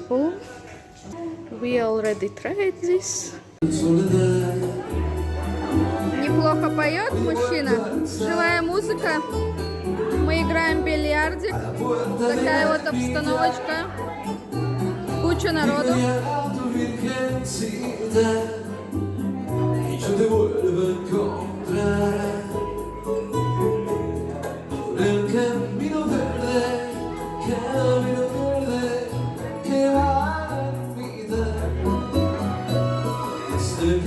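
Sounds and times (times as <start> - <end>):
man singing: 3.6 - 14.0, 14.9 - 34.0
instrumental backing with bass line: 3.6 - 34.0.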